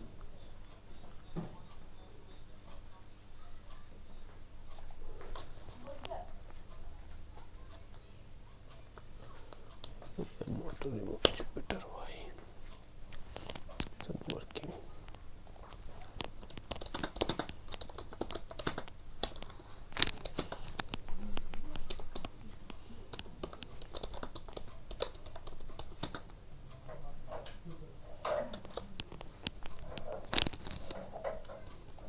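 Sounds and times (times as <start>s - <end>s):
typing on computer keyboard: 4.7s - 6.2s, 13.4s - 26.4s.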